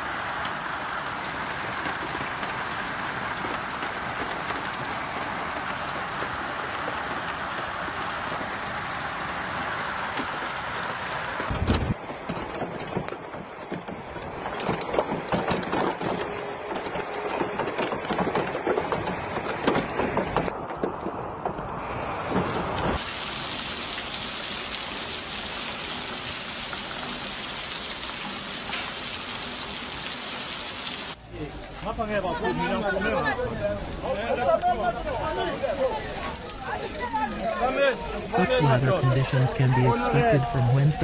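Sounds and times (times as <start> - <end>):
heavy rain hiss: 0.0 - 11.5, 23.0 - 31.2
hailstones clattering: 0.2 - 21.2.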